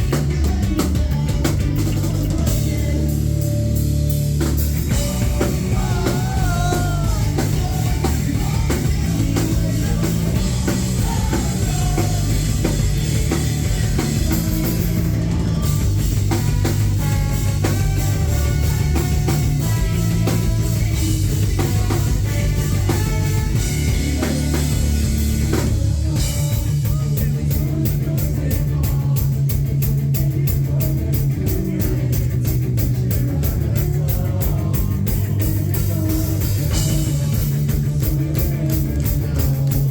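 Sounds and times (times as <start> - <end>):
rock band playing live: 0.0 - 39.9
fast drum hits: 4.4 - 30.0.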